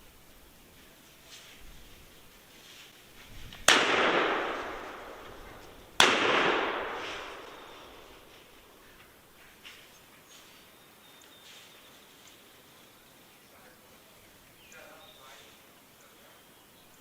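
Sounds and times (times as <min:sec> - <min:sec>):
shotgun shots echoing: 0:03.6 - 0:08.8.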